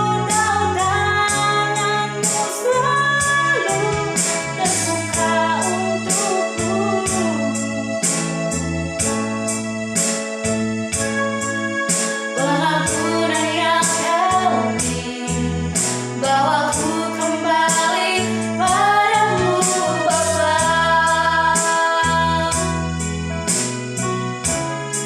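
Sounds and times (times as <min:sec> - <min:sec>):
woman singing: 0:00.0 - 0:07.9, 0:12.4 - 0:22.8
electric keyboard chords with beat: 0:00.0 - 0:25.0.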